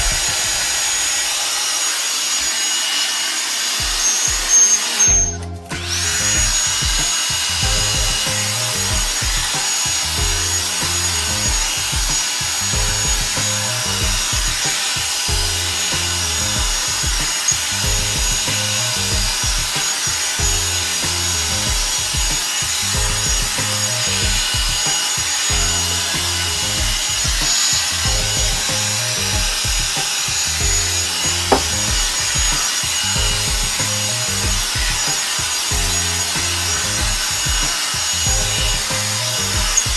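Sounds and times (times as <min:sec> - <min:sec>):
hair dryer brush hissing: 0:00.0 - 0:39.9.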